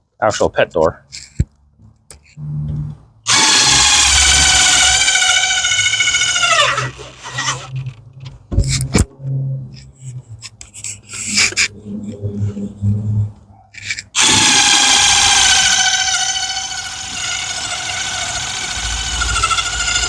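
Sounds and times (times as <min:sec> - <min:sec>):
power drill driving a screw: 0:03.3 - 0:07.7, 0:14.2 - 0:20.0.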